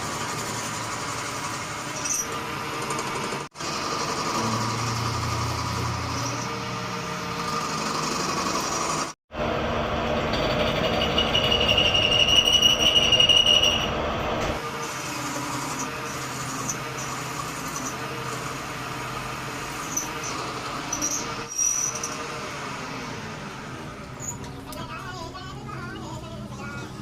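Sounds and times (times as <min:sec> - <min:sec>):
steady mechanical noise: 0:00.0 - 0:27.0
high-pitched metallic squeal: 0:10.3 - 0:14.0, 0:19.7 - 0:22.3.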